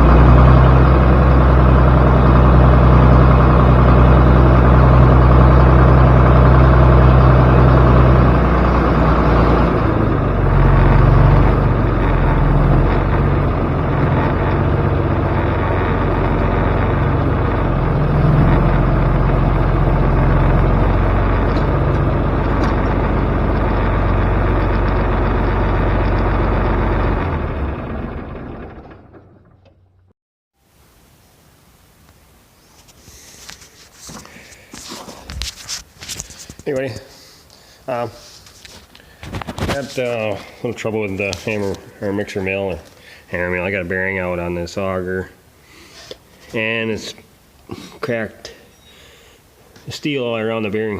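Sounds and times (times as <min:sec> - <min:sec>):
large engine running: 0:00.0 - 0:30.1, 0:37.9 - 0:45.2.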